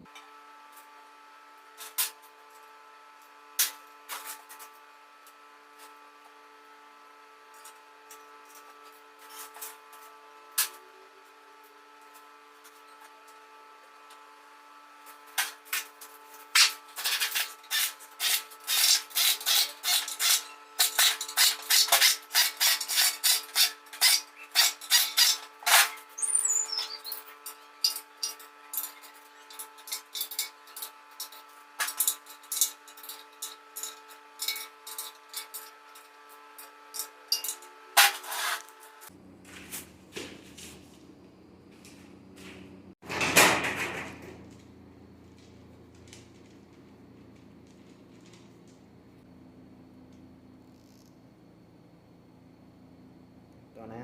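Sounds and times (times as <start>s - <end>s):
hand tools scraping metal: 15.4s - 39.1s
falling squeak: 26.2s - 27.3s.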